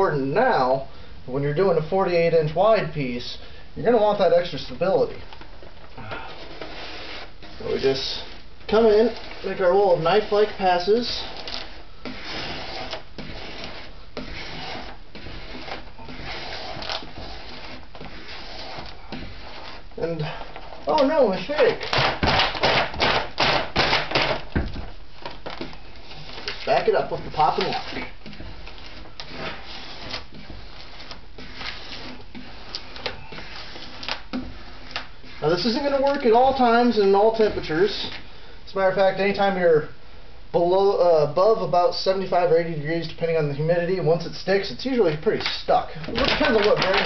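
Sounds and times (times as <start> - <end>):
squeegee scraping tape: 4.2 - 38.2, 45.2 - 47.0.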